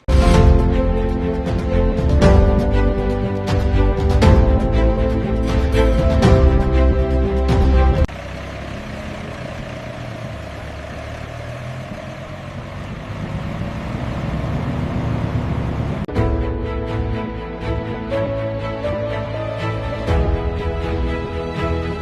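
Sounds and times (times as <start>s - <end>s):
background music: 0.0s - 8.1s, 16.1s - 22.0s
heavy engine rumbling: 0.0s - 22.0s.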